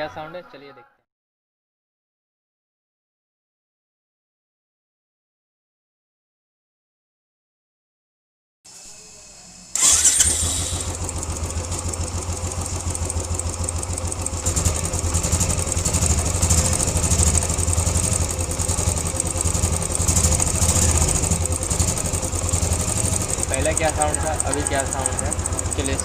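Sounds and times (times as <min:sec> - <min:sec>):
motorcycle engine starting and idling: 0:08.7 - 0:26.0.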